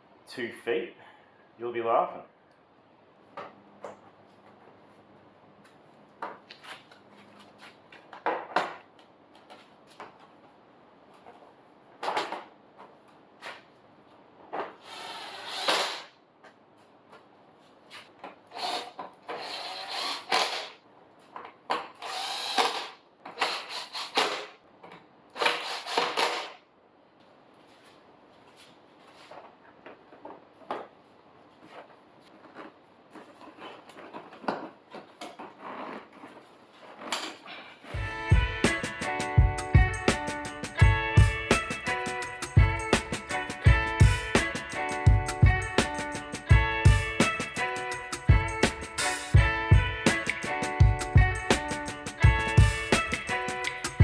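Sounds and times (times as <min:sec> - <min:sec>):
handheld power tool bursts: 0:14.8 - 0:16.2, 0:18.5 - 0:20.8, 0:21.9 - 0:24.6, 0:25.4 - 0:26.6.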